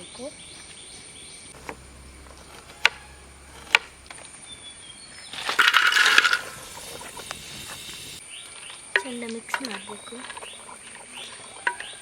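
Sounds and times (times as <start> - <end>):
crab rattling crunching clatter: 5.4 - 7.4.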